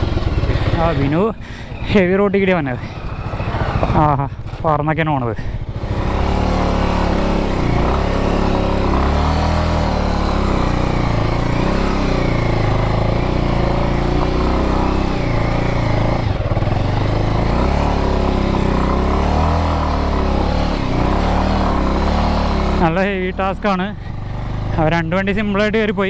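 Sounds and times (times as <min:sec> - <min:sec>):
motorcycle engine under load: 0:00.0 - 0:26.0.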